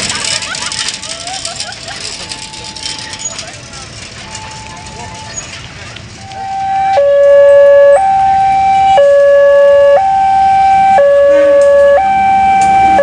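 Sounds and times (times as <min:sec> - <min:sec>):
two-tone siren: 0:06.2 - 0:13.0.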